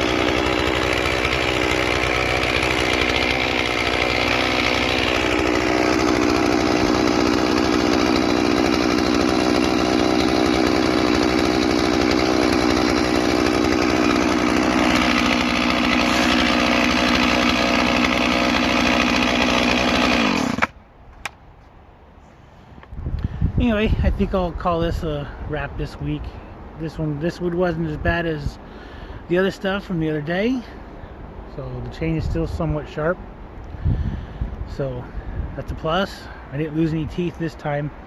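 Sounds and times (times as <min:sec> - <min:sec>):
chainsaw cutting logs: 0:00.0 - 0:21.4.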